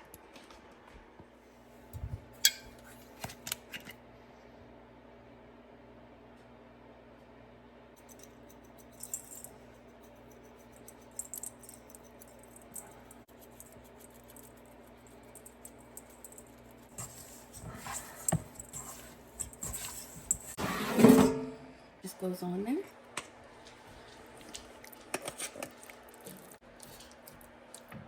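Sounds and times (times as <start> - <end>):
kitchen knocks and clatter: 17.0 - 21.7.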